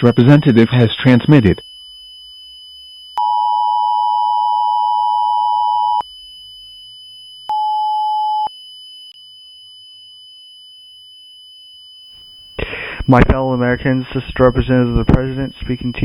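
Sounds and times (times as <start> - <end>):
faint high whine: 0.0 - 16.0
single-tone beep: 3.2 - 6.0, 7.5 - 8.5
two-tone electronic beep: 3.2 - 6.1, 7.4 - 8.5.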